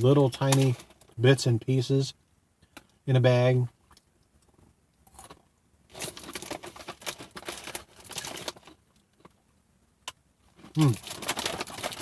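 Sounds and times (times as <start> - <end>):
snack bag crinkling: 5.1 - 9.4, 10.5 - 12.0.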